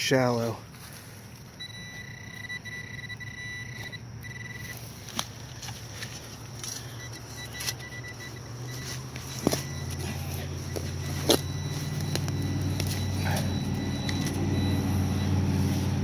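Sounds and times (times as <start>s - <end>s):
metal detector signal tone: 1.6s - 4.9s, 6.9s - 16.0s
digging knocks: 8.7s - 14.7s.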